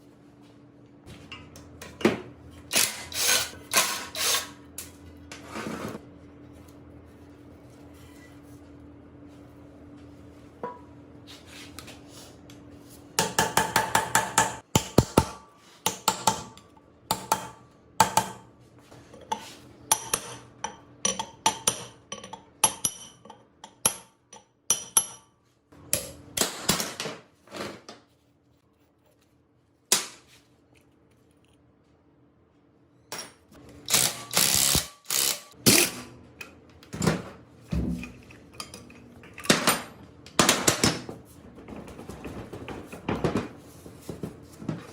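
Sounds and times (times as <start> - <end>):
ratchet clicking: 33.9 - 35.6.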